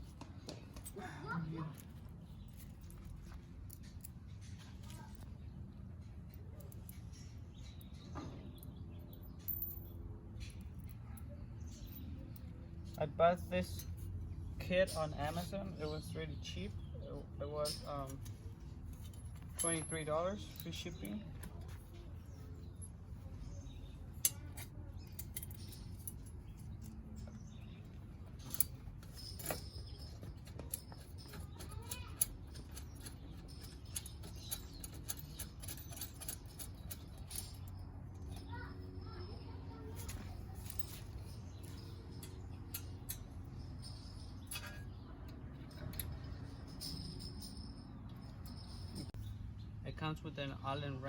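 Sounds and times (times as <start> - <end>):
light clicks and clinks: 0.1 - 49.4
metal hardware clicks and taps: 24.2 - 27.4.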